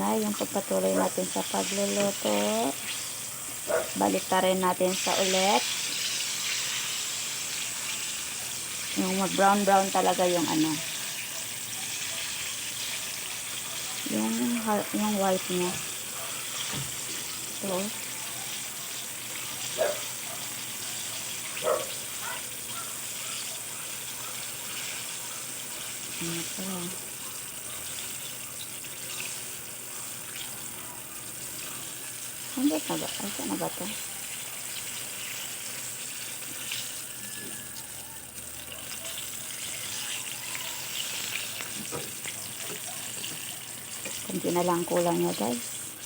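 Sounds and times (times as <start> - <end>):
eggplant sizzling in hot oil: 0.0 - 46.0.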